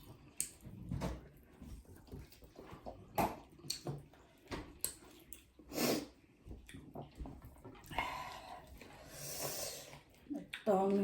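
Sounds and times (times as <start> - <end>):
wet chewing and smacking: 0.0 - 8.0, 9.9 - 11.0.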